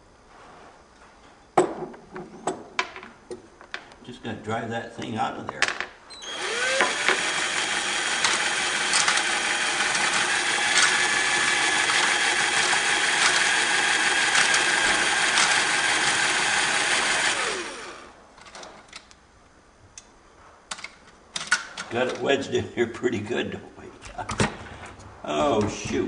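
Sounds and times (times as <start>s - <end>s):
power drill running: 6.2s - 18.2s.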